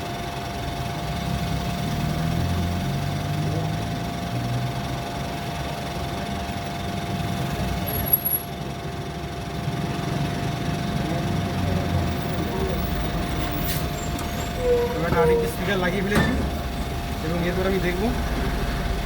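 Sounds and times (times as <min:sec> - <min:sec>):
low mechanical rumble: 0:07.2 - 0:19.0.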